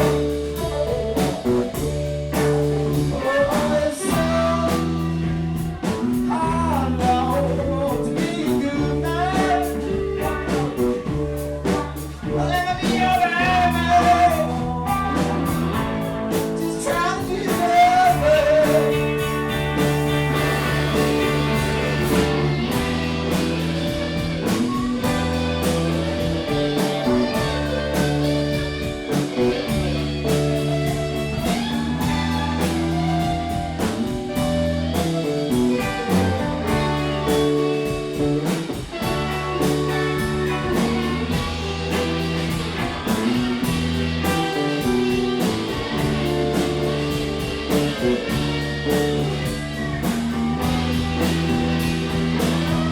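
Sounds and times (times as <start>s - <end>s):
bass guitar: 0.0s - 52.9s
drums: 0.0s - 52.9s
lead guitar: 0.0s - 52.9s
slide guitar: 0.0s - 52.9s.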